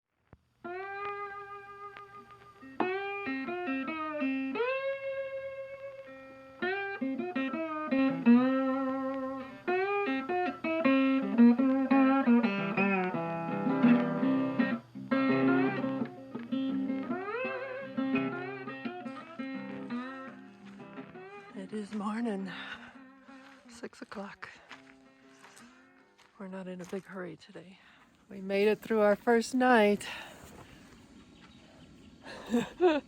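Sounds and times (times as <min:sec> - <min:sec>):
slide guitar melody: 0:00.6 - 0:26.3.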